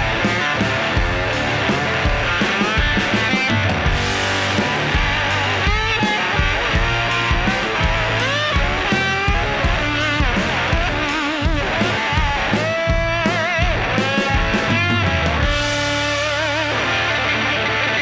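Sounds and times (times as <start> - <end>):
drum beat: 0.0 - 16.1
electric guitar bending notes: 0.0 - 18.0.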